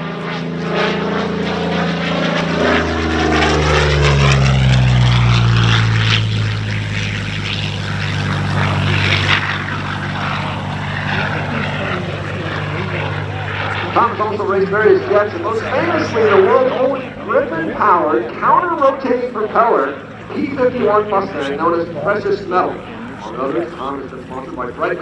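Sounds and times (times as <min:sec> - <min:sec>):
propeller plane flying past: 0:00.0 - 0:25.0.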